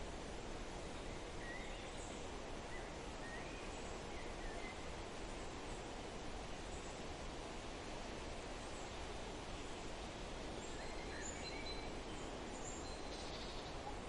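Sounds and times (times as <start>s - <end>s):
forest wind: 0.0s - 14.0s.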